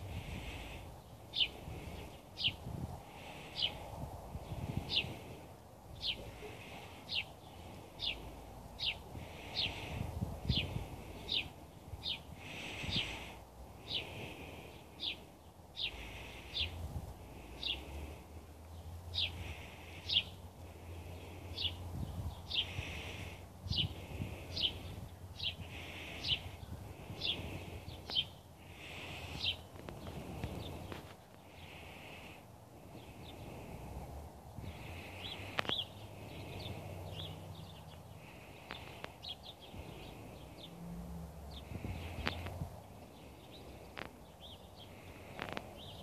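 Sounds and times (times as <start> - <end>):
bird chirping: 0.1 - 3.8, 5.9 - 18.0, 18.7 - 20.4, 21.0 - 32.3, 34.6 - 40.8, 41.5 - 46.0.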